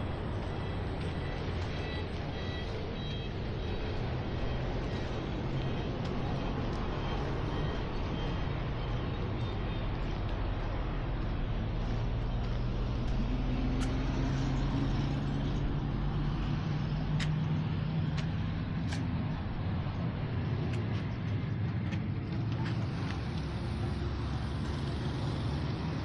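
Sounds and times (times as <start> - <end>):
road traffic noise: 0.0 - 26.0
vehicle engine humming past: 0.0 - 26.0.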